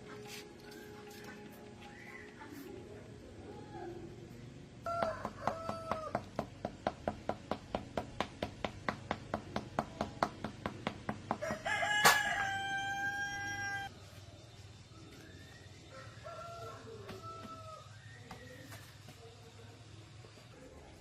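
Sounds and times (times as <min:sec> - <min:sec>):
rooster crowing: 0:04.8 - 0:06.3, 0:11.4 - 0:13.9, 0:15.8 - 0:18.0.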